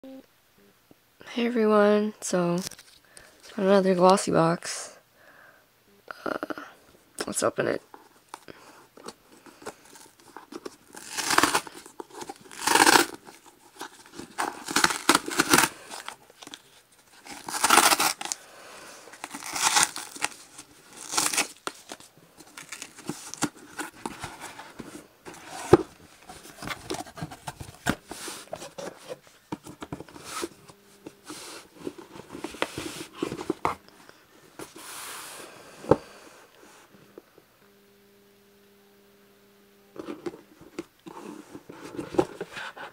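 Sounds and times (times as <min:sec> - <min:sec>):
packaging rustling: 0:07.9 - 0:18.4, 0:19.1 - 0:33.9
paper tearing and crinkling: 0:09.6 - 0:18.4, 0:19.1 - 0:29.2.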